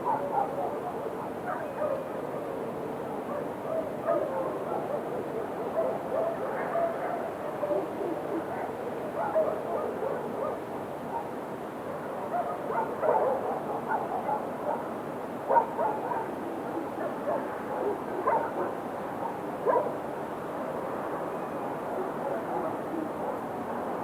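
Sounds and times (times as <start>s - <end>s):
steady background hiss: 0.0s - 24.0s
dogs barking and yipping: 12.3s - 14.9s, 15.5s - 16.3s, 17.0s - 20.0s.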